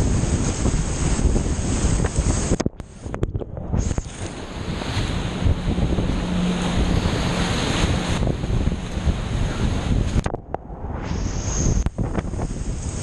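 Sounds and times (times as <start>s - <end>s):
wind buffeting microphone: 0.0s - 13.0s
rushing whitewater river: 3.7s - 10.2s.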